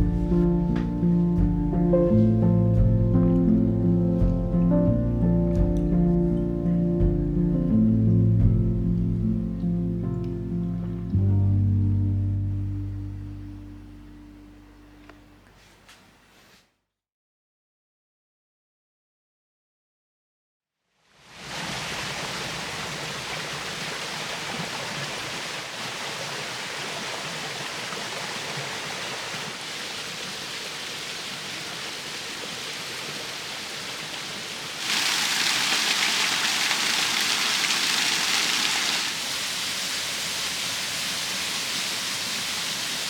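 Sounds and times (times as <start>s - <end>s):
running water rushing: 21.2s - 43.0s.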